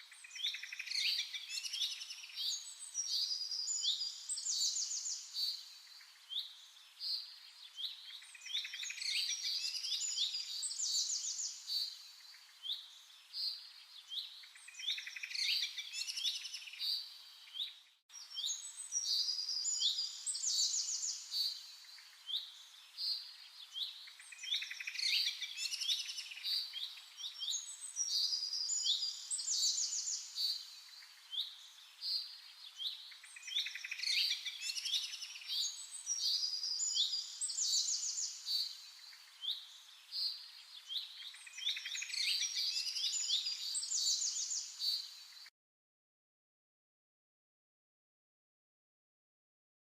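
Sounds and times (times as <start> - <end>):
birds chirping and singing: 14.1 - 45.5.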